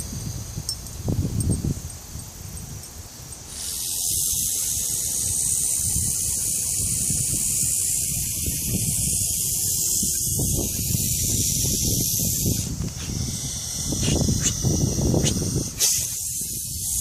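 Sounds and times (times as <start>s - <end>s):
snake hissing: 3.4s - 17.0s.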